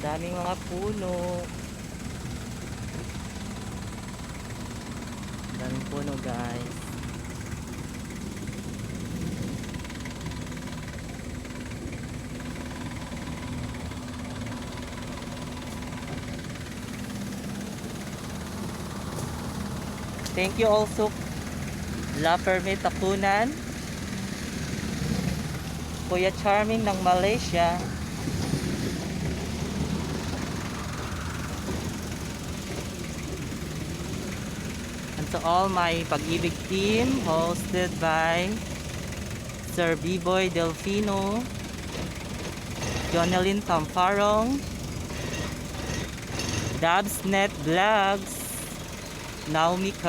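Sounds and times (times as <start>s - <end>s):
road noise: 0.0s - 50.0s
vehicle engine droning: 0.0s - 50.0s.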